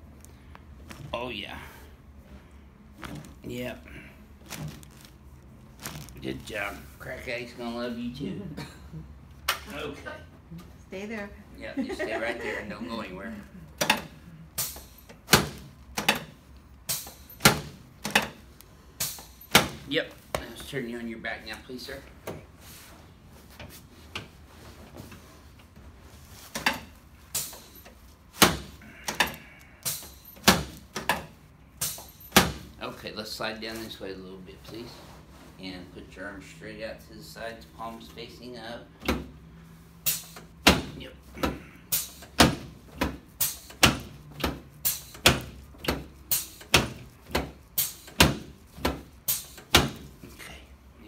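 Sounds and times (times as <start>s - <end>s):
shuffling and rustling on table: 0.4s - 1.2s, 4.3s - 7.0s.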